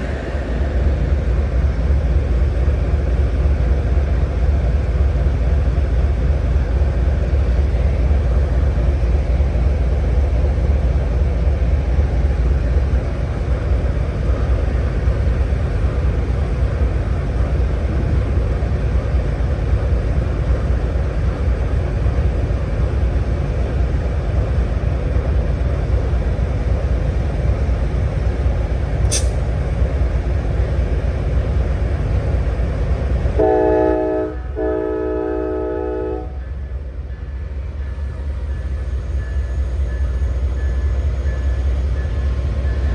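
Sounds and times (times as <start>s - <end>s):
diesel locomotive rumbling: 0.0s - 42.9s
click: 29.0s - 29.5s
locomotive horn: 33.4s - 36.6s.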